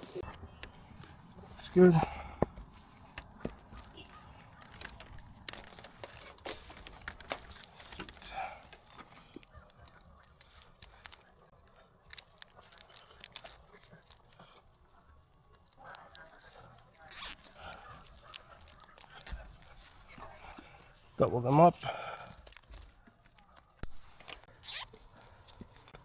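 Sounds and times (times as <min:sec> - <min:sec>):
clicks and knocks of tools: 0:00.2 - 0:20.9
short squeak: 0:24.6 - 0:25.0.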